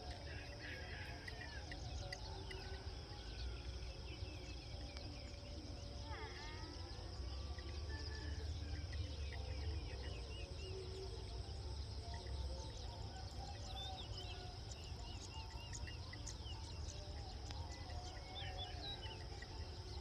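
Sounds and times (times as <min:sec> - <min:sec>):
birds chirping: 0:00.0 - 0:20.0
crickets droning: 0:00.0 - 0:20.0.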